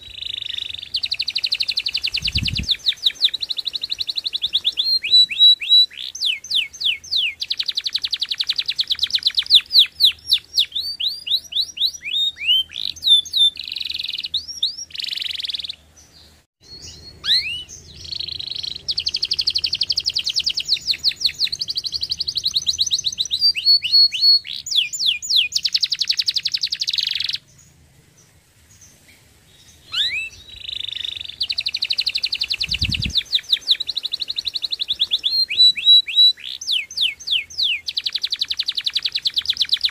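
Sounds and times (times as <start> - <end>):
canary singing: 0.0 - 27.8, 29.5 - 39.9.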